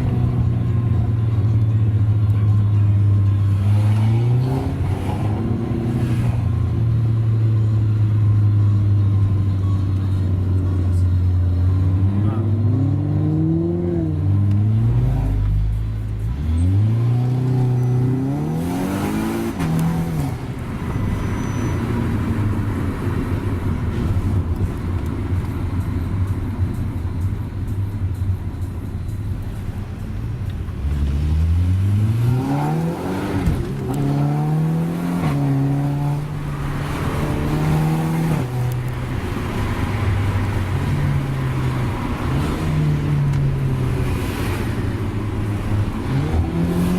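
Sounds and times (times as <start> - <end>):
road noise: 0.0 - 46.9
car engine accelerating hard: 10.3 - 25.2, 30.4 - 46.9.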